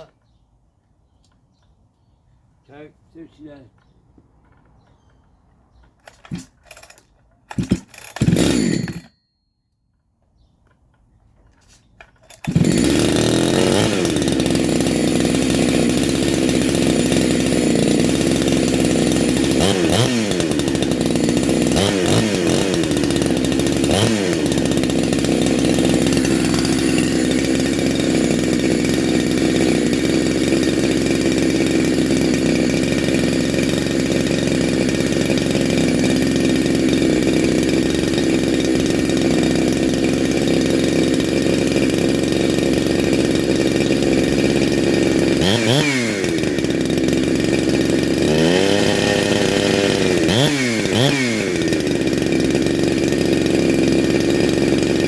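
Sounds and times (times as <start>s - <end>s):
chainsaw idling and revving: 6.0s - 9.2s, 12.1s - 55.0s.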